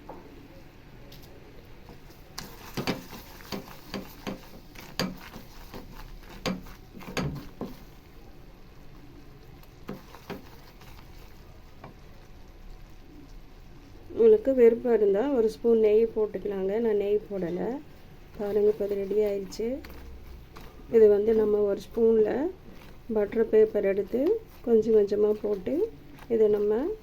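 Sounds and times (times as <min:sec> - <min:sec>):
low sizzle: 0:00.0 - 0:27.0
spoon tapping and scraping pan: 0:02.4 - 0:07.9, 0:09.9 - 0:10.8.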